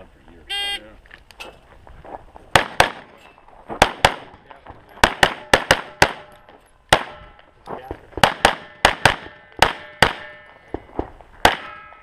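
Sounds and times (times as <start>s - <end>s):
pistol shots: 2.5s - 3.2s, 3.8s - 4.4s, 5.0s - 7.4s, 8.2s - 10.8s, 11.4s - 12.0s.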